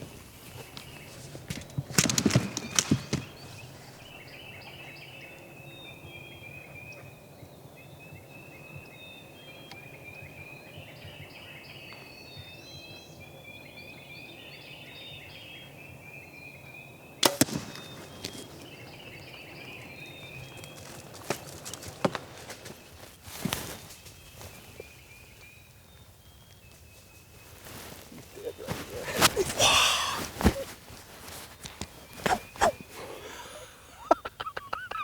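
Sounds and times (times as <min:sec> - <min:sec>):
songbirds chirping: 0:00.0 - 0:35.0
bow shot crack: 0:02.0 - 0:03.8, 0:17.2 - 0:20.0, 0:32.2 - 0:33.0.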